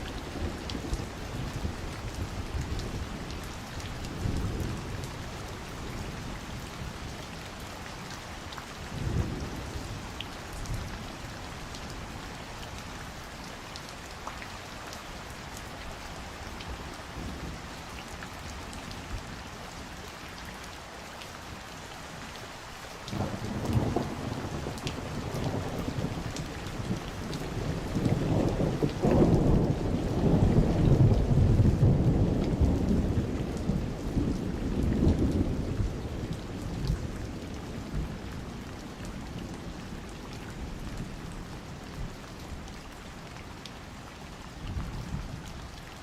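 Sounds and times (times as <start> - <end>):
raindrops ticking close by: 0.0 - 46.0
steady rain falling: 0.0 - 46.0
thunder rumbling: 23.1 - 38.2.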